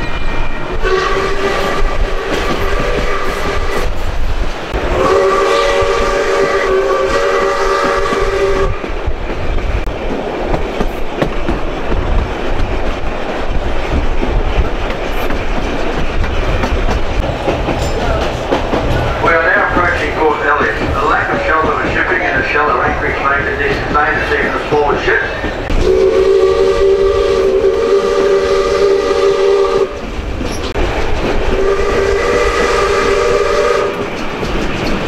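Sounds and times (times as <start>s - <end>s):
train rumbling and clattering on rails: 0.0s - 35.0s
steam whistle chord: 0.8s - 1.9s, 4.9s - 8.7s, 25.8s - 29.9s, 31.6s - 34.0s.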